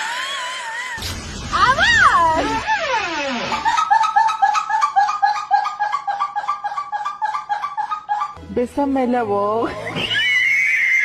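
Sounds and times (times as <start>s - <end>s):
high-pitched laugh-like voice: 3.4s - 8.4s.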